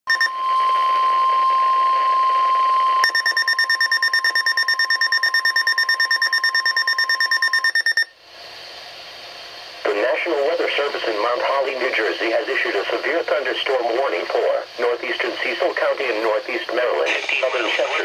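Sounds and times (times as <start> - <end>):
rapidly pulsing electronic beep: 0.1 - 0.5, 3.0 - 8.1
steady warning alarm tone: 0.1 - 8.1
faint radio hiss: 9.8 - 18.0.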